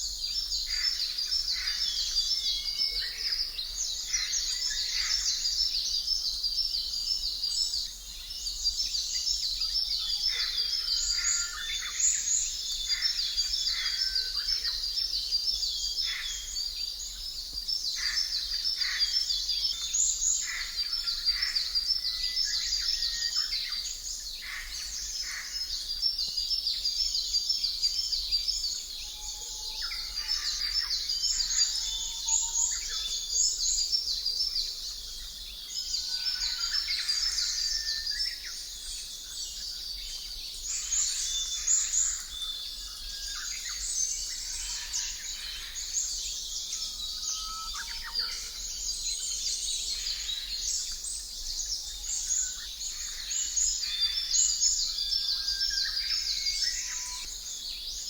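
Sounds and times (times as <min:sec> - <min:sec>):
birds chirping and singing: 0:28.7 - 0:58.0.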